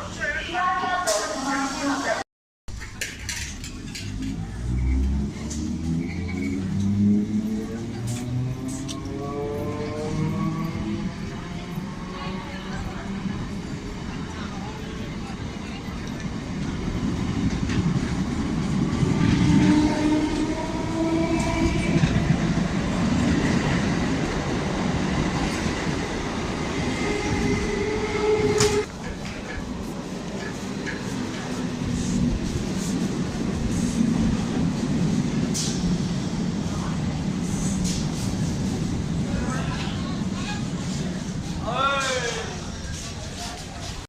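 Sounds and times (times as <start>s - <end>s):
train rumble and wheel clatter: 2.7s - 44.0s
electric train whine: 18.3s - 30.8s.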